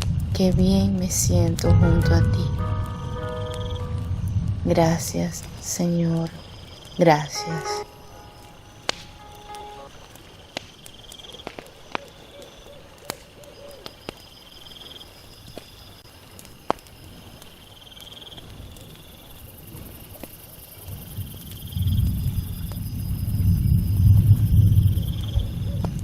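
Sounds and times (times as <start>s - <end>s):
low wind rumble: 0.0s - 9.9s, 20.9s - 26.0s
campfire crackling: 0.0s - 26.0s
crickets trilling: 3.5s - 12.8s, 13.5s - 26.0s.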